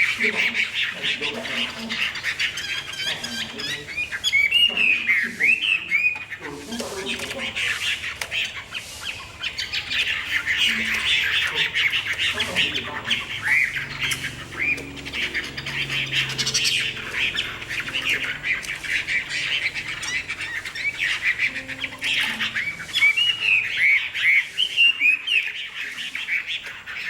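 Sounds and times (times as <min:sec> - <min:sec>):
songbird harsh chirping calls: 0:00.0 - 0:27.0.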